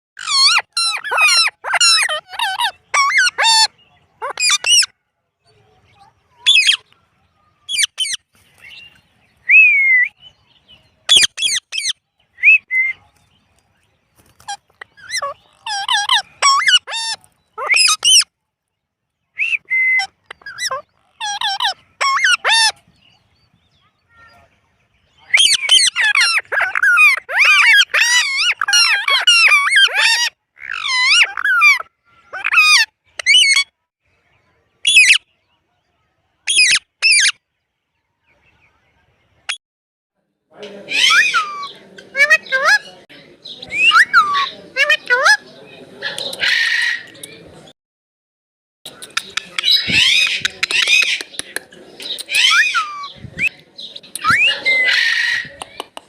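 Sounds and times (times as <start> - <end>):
parrot squawking and chattering: 0.2 - 4.9, 6.4 - 6.8, 7.7 - 8.2, 11.1 - 12.6, 14.4 - 18.3, 19.4 - 22.8, 25.3 - 33.7, 34.8 - 35.2, 36.5 - 37.4, 40.8 - 45.4, 46.0 - 47.2, 48.9 - 56.0.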